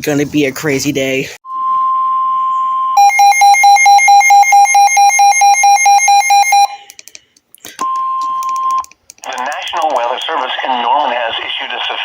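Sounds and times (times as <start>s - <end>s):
rapid alarm beeping: 1.5s - 6.9s
steady warning tone: 1.5s - 6.9s.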